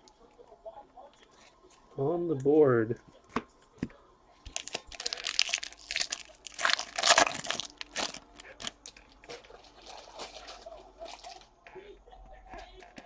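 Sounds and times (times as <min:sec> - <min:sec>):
foil wrapper crinkling: 0:04.4 - 0:11.5.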